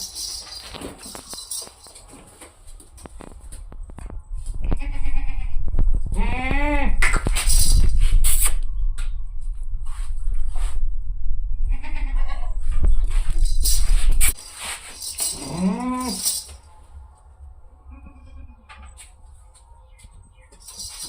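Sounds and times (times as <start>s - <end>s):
loud low rumble: 3.6s - 14.4s.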